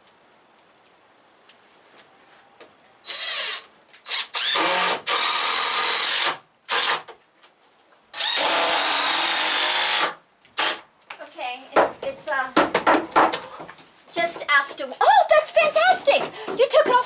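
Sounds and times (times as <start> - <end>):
power drill motor whine: 3.0 - 6.9, 8.2 - 10.7.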